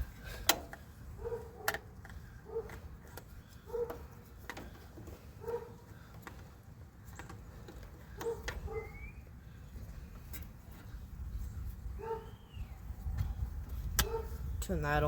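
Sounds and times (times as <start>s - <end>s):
bird chirping: 7.1s - 10.0s, 11.4s - 13.0s.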